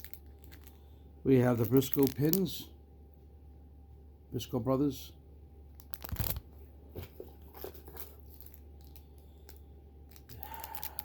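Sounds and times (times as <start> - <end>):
plastic rustling: 0.0 - 2.6, 5.8 - 11.0
packaging tearing: 1.6 - 2.4, 5.8 - 6.4, 10.1 - 11.0.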